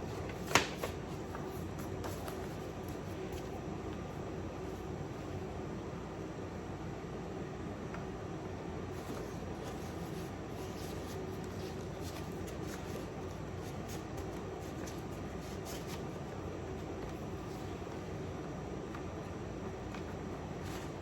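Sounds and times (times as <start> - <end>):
paper record sleeve rustling: 0.0 - 4.0, 8.9 - 18.2, 19.7 - 21.0.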